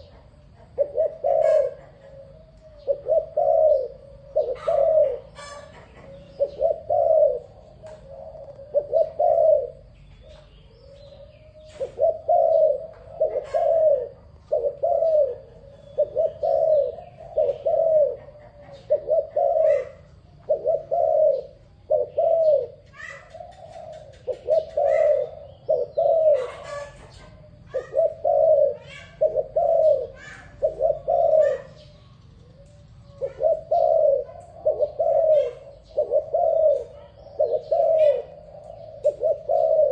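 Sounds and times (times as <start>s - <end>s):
dove cooing: 0.0s - 39.9s
small birds chirping: 0.0s - 39.9s.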